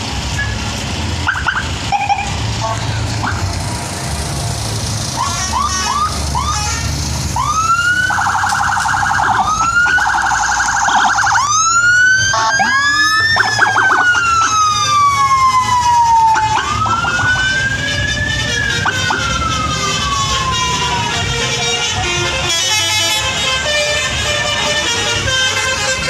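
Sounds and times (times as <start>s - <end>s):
siren-like bus horn tune: 1.2s - 3.5s, 5.2s - 26.0s.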